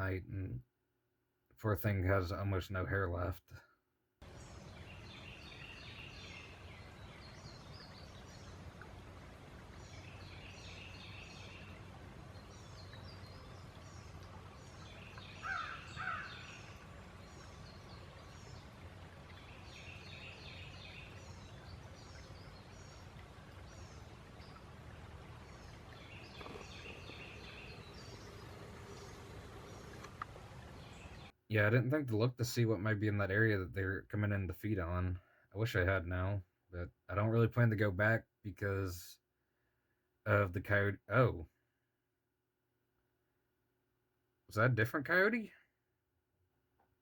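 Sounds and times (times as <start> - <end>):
faint high chirping calls: 9.7 - 31.3.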